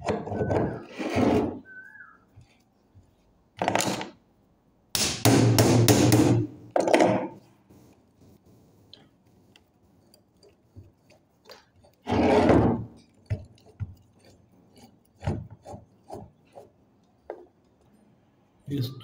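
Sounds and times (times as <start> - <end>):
metal scraping rub: 0.0 - 1.8, 9.8 - 16.7.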